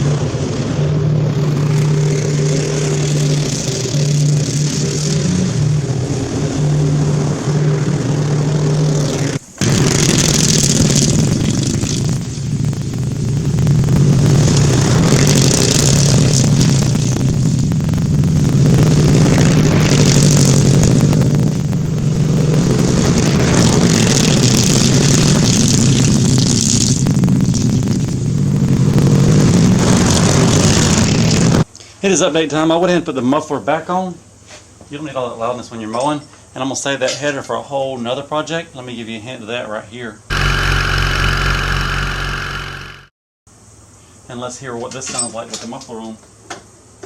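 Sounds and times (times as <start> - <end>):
loud mower engine revving: 0.0 - 17.6, 18.3 - 26.8, 40.3 - 43.1.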